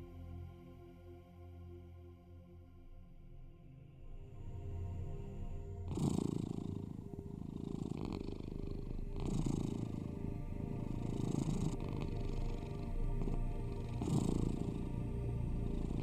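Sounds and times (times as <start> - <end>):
low steady drone: 0.0 - 16.0
cat purring: 5.8 - 16.0.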